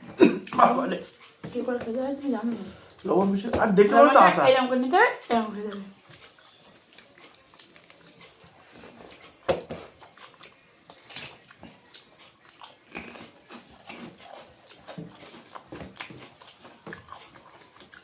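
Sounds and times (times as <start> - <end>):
crunchy bites and chewing: 9.9 - 18.0.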